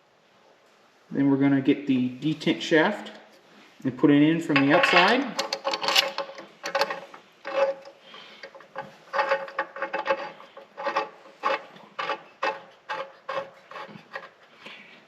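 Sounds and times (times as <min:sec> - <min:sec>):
metal scraping and rubbing: 0:04.5 - 0:14.5.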